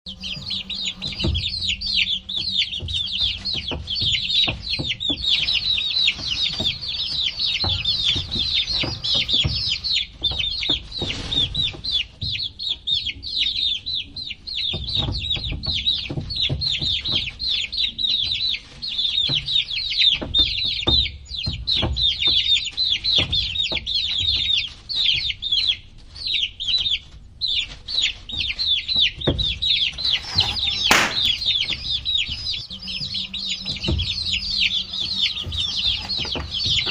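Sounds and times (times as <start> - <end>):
low knocks and bumps: 0.1 - 9.9, 30.0 - 36.9
baby chicks peeping: 0.1 - 36.9.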